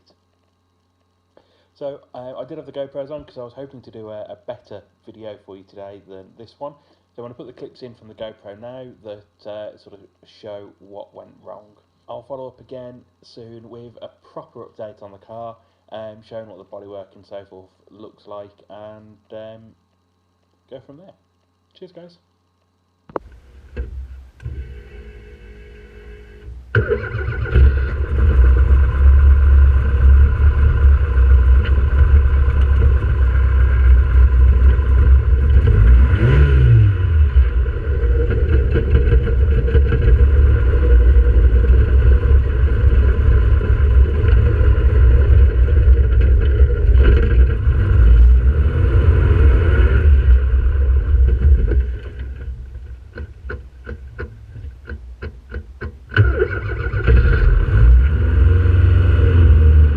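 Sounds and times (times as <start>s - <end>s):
car engine running: 23.1s - 59.9s.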